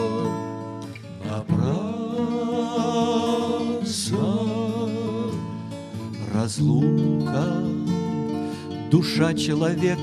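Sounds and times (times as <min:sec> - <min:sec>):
person singing with vibrato: 0:00.0 - 0:00.6, 0:01.2 - 0:08.2.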